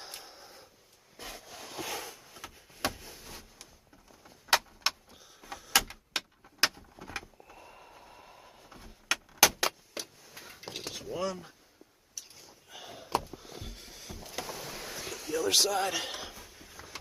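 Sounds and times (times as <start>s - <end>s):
scraping rustle: 1.1s - 3.6s, 13.4s - 17.0s
plastic caps being pried off: 3.9s - 7.3s, 8.7s - 11.0s
sharp plastic clicks and snaps: 4.5s - 7.3s.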